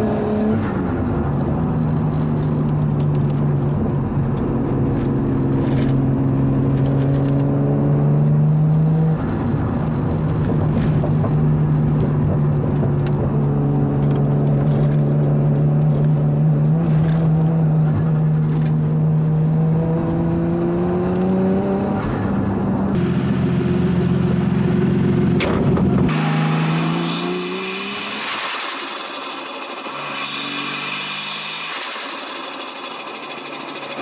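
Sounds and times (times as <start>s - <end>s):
car engine running: 9.1s - 18.9s, 22.2s - 34.0s.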